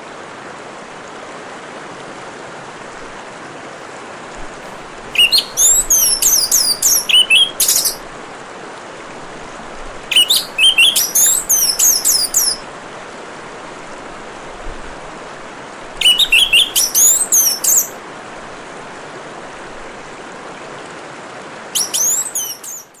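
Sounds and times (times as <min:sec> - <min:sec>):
water trickling: 0:03.8 - 0:08.4, 0:09.1 - 0:20.0
thrush singing: 0:04.6 - 0:08.0, 0:10.1 - 0:12.6, 0:16.0 - 0:18.0, 0:21.8 - 0:23.0.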